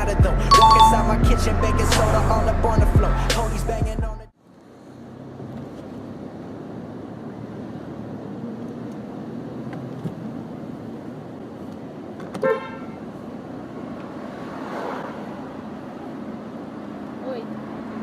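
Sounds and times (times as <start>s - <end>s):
street traffic noise: 0.0s - 18.0s
car horn toot: 12.4s - 13.0s.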